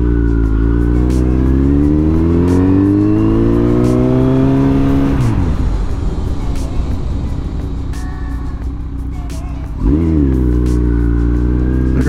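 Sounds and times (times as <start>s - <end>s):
motorcycle engine revving: 0.0s - 12.0s
rushing noise: 0.0s - 12.0s.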